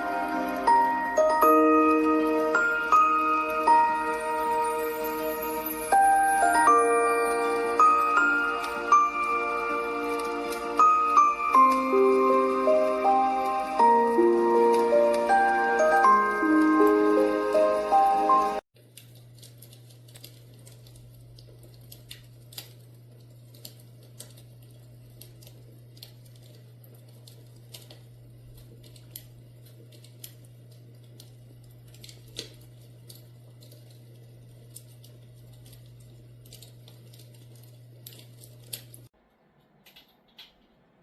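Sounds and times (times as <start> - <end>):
fire crackling pops and snaps: 18.8 - 39.1.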